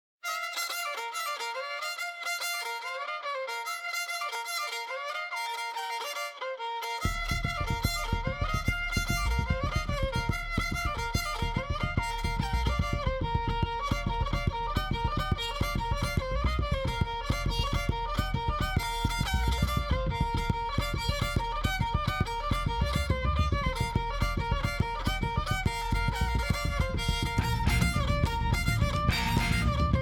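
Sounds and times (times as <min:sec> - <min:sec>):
fiddle-like bowed string melody: 0:00.2 - 0:30.0
bass line: 0:07.0 - 0:30.0
steady beat: 0:07.0 - 0:30.0.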